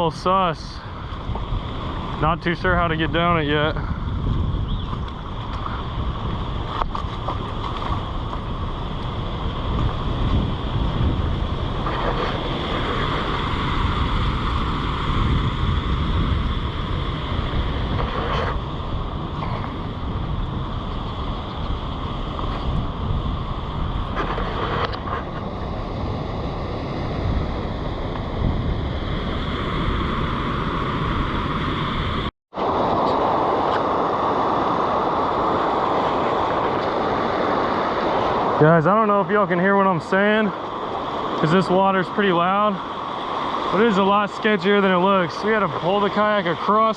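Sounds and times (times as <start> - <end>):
wind buffeting the microphone: 0.0 - 46.9.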